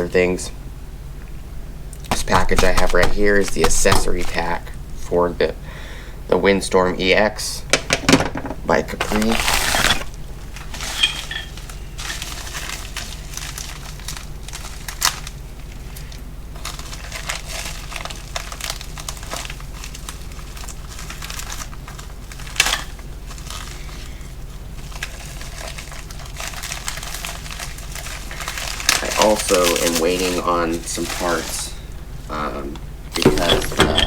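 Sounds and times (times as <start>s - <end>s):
packaging sharp snaps: 2.0s - 4.4s
packaging crinkling and rustling: 2.0s - 4.7s, 8.8s - 32.1s.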